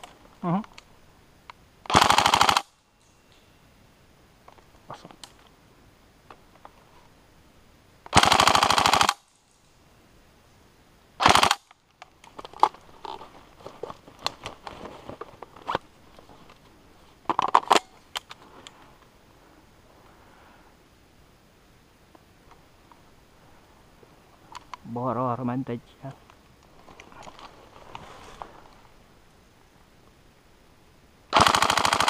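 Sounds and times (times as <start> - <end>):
airsoft rifle full-auto bursts: 1.9 - 2.7, 8.1 - 9.3, 11.2 - 11.7, 31.3 - 32.0.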